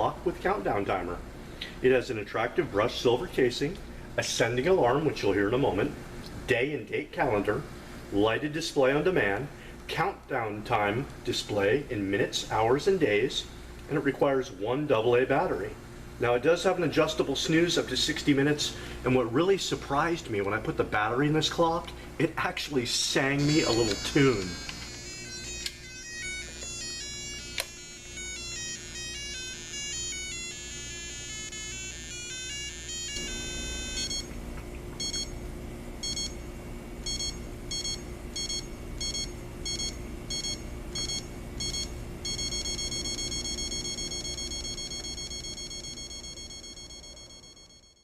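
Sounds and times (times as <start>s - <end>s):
alarm clock beeped tune: 23.4s - 34.3s, 35.0s - 35.3s, 36.0s - 36.3s, 37.1s - 48.0s
alarm clock beeping: 23.4s - 34.3s, 35.0s - 35.3s, 36.0s - 36.3s, 37.0s - 48.0s.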